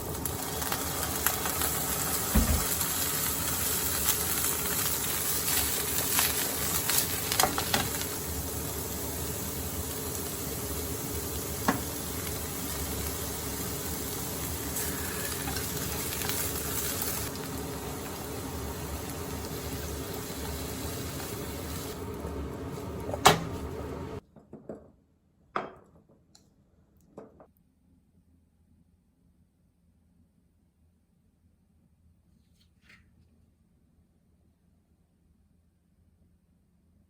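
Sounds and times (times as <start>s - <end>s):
food sizzling in a frying pan: 0.0s - 24.2s.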